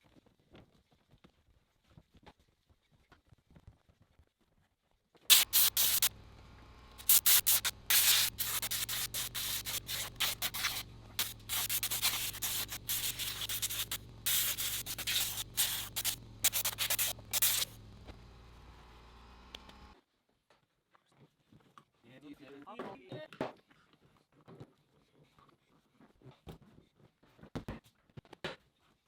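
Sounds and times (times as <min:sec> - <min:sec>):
sprayer hissing bursts: 0:05.3 - 0:18.2
steady motor hum: 0:05.3 - 0:20.0.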